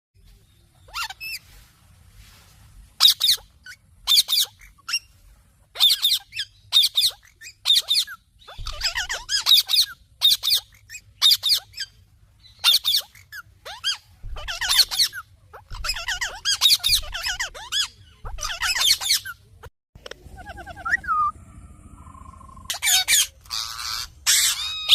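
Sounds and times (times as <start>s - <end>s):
parrot squawking: 3.0s - 5.1s, 5.8s - 11.9s, 12.6s - 19.3s, 20.2s - 21.3s, 22.0s - 24.9s.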